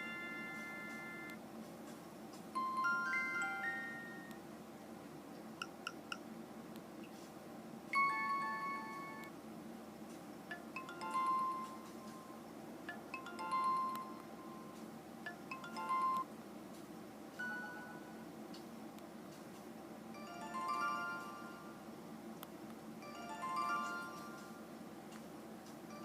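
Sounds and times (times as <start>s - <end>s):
phone ringtone chiming notes: 0.0s - 1.4s, 2.6s - 4.3s, 8.0s - 9.3s, 10.5s - 12.1s, 12.9s - 16.2s, 17.4s - 18.1s, 20.2s - 21.8s, 23.0s - 24.6s.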